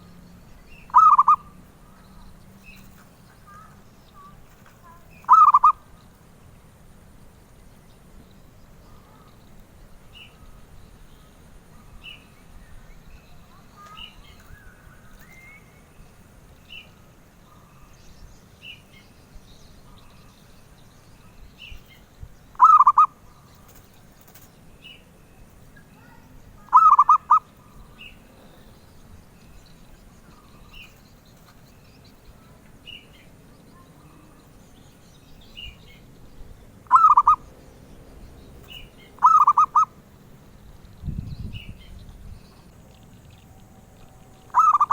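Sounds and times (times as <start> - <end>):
dove cooing: 0.9 - 1.6, 4.6 - 5.8, 22.6 - 24.5, 26.6 - 28.0, 36.9 - 37.5, 38.6 - 40.0, 44.2 - 44.9.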